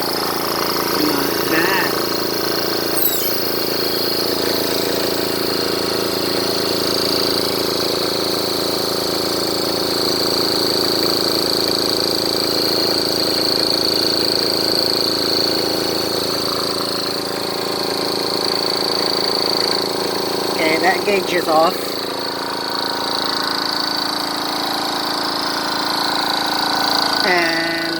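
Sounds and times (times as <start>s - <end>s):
air compressor hum: 0.0s - 27.9s
high steady whine: 0.1s - 6.2s.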